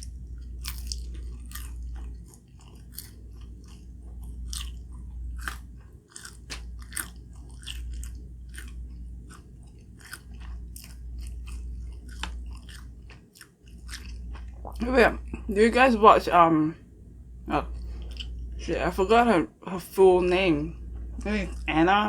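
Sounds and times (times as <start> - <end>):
person chewing food: 0.0 - 15.5, 17.6 - 18.6, 20.3 - 22.0
steady low hum: 0.0 - 22.0.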